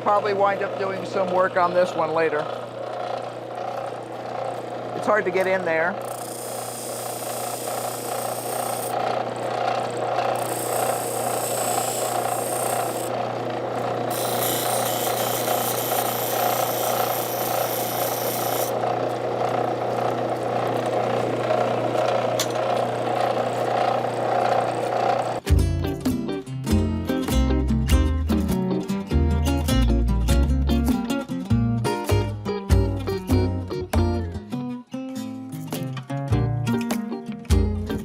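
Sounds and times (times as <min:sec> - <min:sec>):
power tool running: 0:00.0 - 0:25.4.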